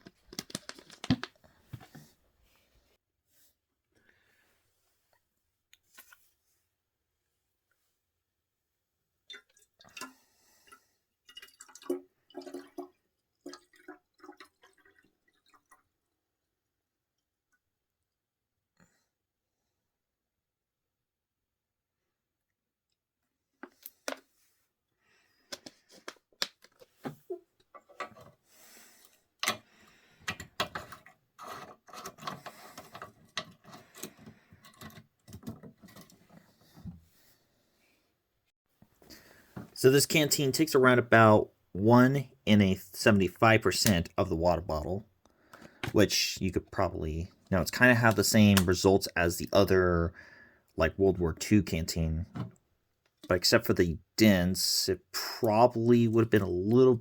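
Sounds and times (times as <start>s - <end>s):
water pouring and splashing: 9.3s - 16.0s
metal bottles clicking and rattling: 29.4s - 36.4s.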